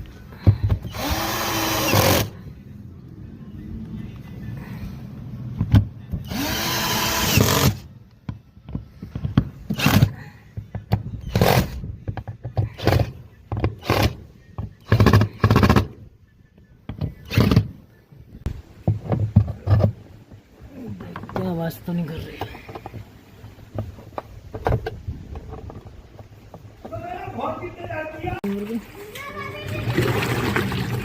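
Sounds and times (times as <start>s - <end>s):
power tool running: 0.9s - 2.4s, 6.2s - 7.8s.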